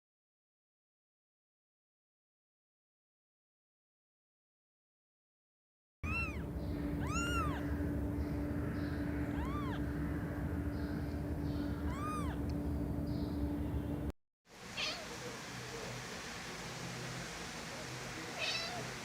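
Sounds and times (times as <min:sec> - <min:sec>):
cat meowing: 0:06.0 - 0:07.7, 0:09.2 - 0:09.9, 0:11.8 - 0:12.4, 0:14.8 - 0:15.2, 0:18.4 - 0:19.0
steady low hum: 0:06.0 - 0:19.0.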